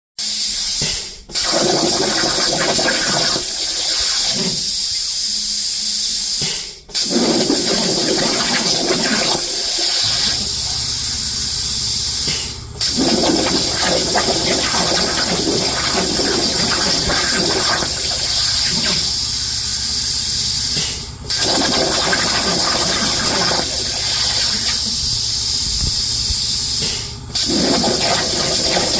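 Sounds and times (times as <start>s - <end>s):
cutting torch hissing: 7.0s - 26.7s, 27.4s - 28.9s.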